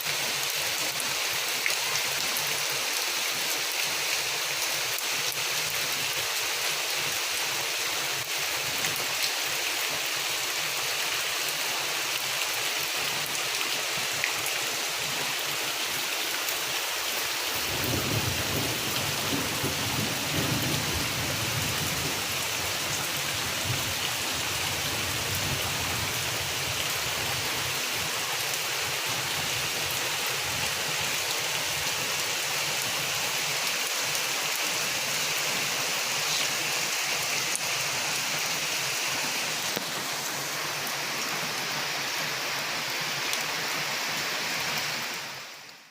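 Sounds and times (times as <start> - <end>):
steady rain falling: 0.0 - 45.9
low rumble of thunder: 17.6 - 22.4.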